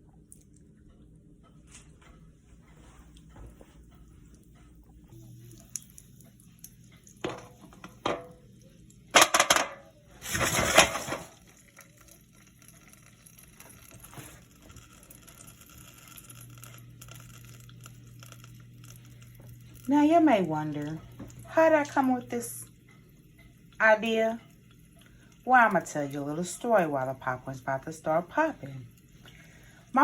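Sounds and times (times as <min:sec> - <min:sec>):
metal pot knocks: 0:07.2 - 0:08.4
pot and lid clattering: 0:09.1 - 0:11.4
pot lid clanking: 0:09.2 - 0:09.8.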